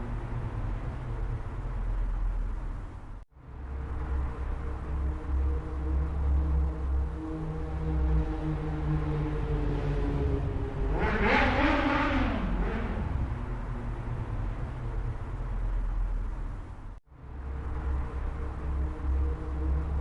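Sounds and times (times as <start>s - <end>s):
motorcycle engine running and revving: 3.9s - 16.2s.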